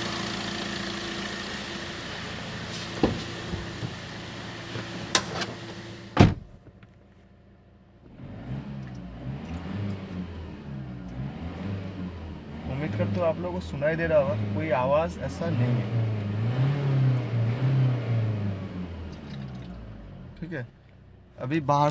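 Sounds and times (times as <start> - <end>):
car engine running: 0.0 - 21.9
door shutting thud: 3.0 - 4.0, 6.2 - 6.6
engine revving muffled: 8.0 - 20.6.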